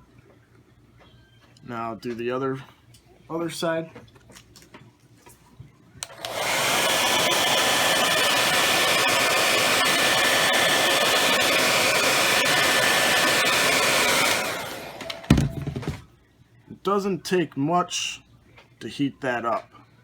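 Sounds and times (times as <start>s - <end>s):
hair dryer switch click: 6.0s - 7.8s, 14.2s - 15.3s
hair dryer blowing: 6.0s - 16.0s.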